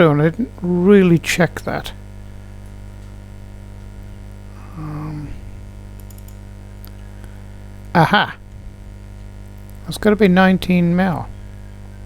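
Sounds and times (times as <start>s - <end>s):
electrical mains hum: 0.0s - 12.0s
person murmuring hmm: 4.5s - 5.6s, 8.0s - 8.4s
faint clicks: 5.9s - 7.4s, 9.6s - 9.8s.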